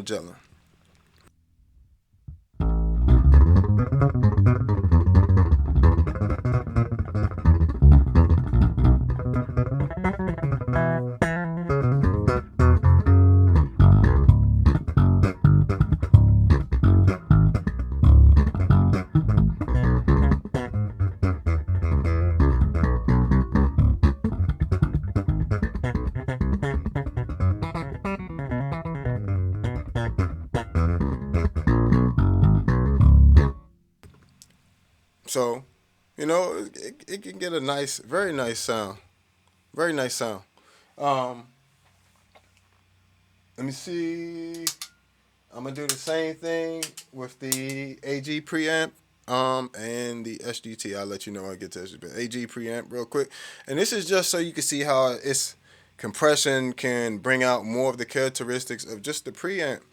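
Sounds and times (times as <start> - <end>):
electric bass guitar: 2.3 - 33.7.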